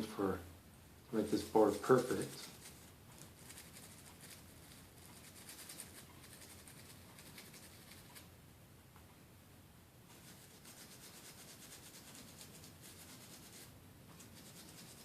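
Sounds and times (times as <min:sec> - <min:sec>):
faint scrubbing on circuit board: 0:01.2 - 0:08.2, 0:10.1 - 0:15.0.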